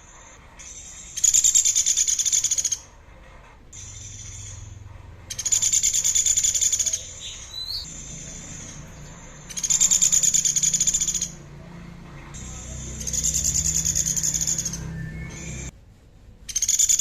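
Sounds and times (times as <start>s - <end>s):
bird rising whistle: 13.0s - 15.7s.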